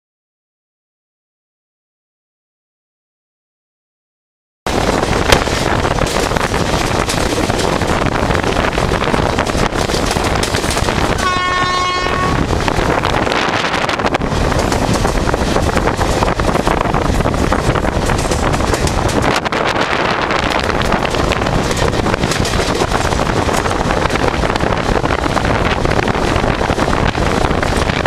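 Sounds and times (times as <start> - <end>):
train rumbling at speed: 4.7 - 28.0
locomotive horn blast: 11.1 - 12.5.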